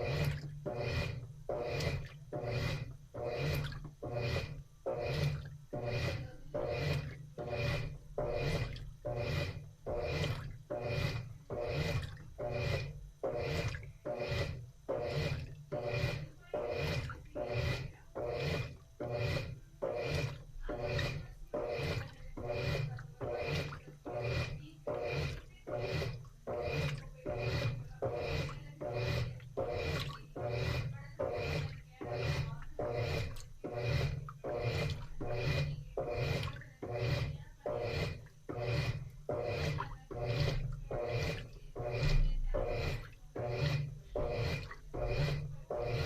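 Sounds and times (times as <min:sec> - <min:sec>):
low motor hum: 0:00.0 - 0:46.0
washing machine water swishing: 0:00.0 - 0:46.0.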